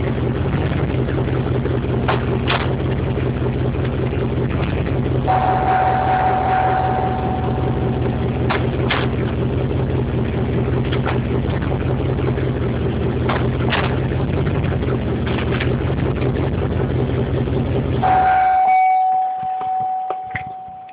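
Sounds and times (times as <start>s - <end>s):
car engine idling: 0.0s - 20.9s
engine shutting off: 0.0s - 20.9s
drivetrain clunk: 1.7s - 20.9s
chime-like tone: 5.3s - 8.8s, 18.0s - 20.9s.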